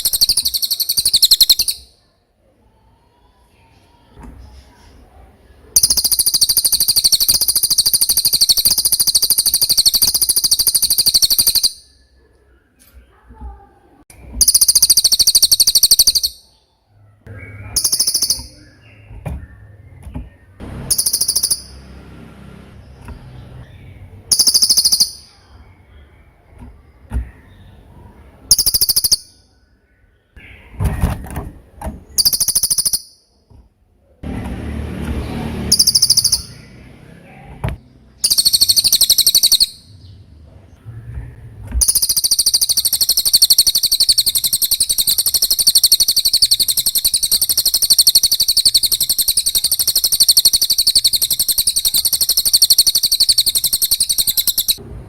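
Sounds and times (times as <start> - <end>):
parrot high-pitched chirping: 0.0 - 2.1, 5.7 - 12.2, 14.4 - 16.6, 17.3 - 19.1, 20.7 - 22.0, 23.6 - 25.8, 28.5 - 29.5, 32.2 - 33.4, 35.6 - 37.0, 38.2 - 40.1, 41.8 - 54.8.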